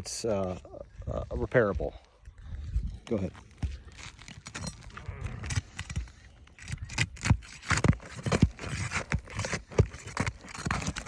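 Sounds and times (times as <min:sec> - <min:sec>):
metal tool scraping shingles: 0:03.9 - 0:11.0.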